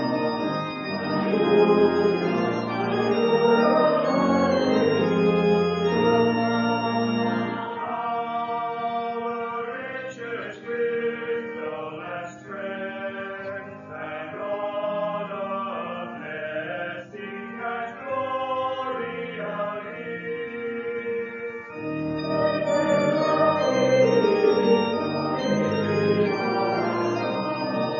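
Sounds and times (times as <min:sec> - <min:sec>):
accompanying notes: 0:00.0 - 0:09.4, 0:20.4 - 0:27.9
voices singing a hymn: 0:00.0 - 0:27.9.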